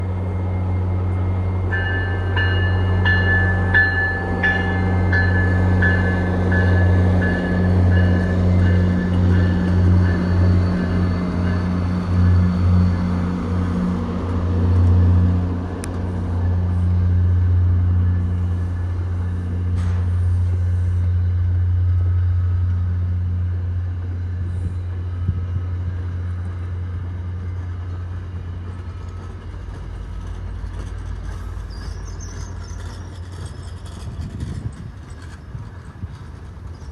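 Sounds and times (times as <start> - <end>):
train rolling with low drone: 0.0 - 36.9.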